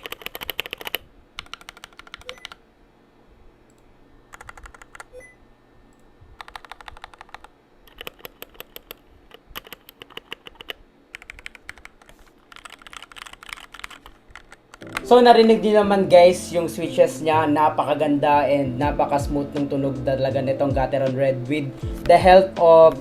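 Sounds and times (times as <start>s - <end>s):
soft mechanical keyboard typing: 0.0s - 2.6s, 4.3s - 5.2s, 5.9s - 15.6s.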